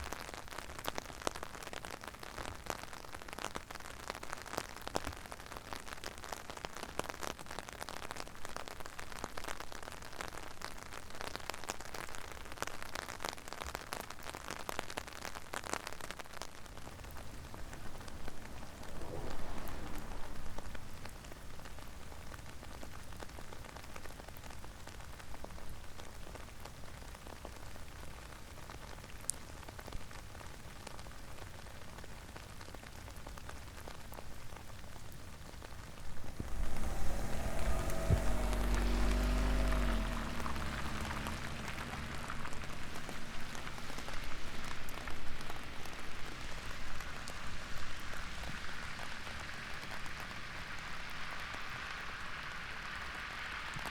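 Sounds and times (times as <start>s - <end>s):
rain falling: 0.0s - 53.9s.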